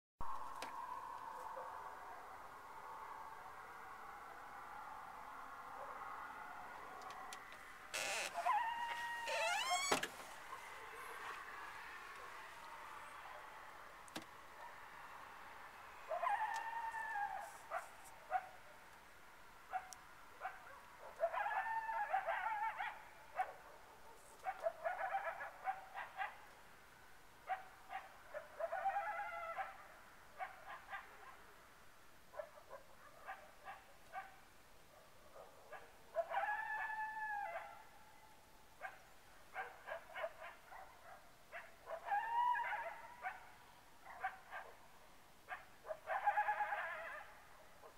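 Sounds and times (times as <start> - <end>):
canine long howling cries: 8.0 - 10.0, 16.1 - 17.9, 21.2 - 22.8, 28.6 - 29.7, 36.2 - 37.8, 41.9 - 43.3, 46.1 - 47.3
canine yips and barks: 8.0 - 11.3, 16.1 - 18.5, 19.7 - 26.4, 27.5 - 29.8, 32.4 - 34.4, 35.4 - 37.8, 38.8 - 44.8, 45.5 - 47.9.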